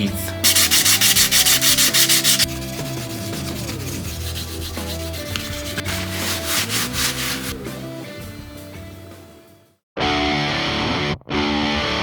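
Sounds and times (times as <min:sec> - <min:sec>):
scratchy rubbing rhythm: 0:00.4 - 0:07.8.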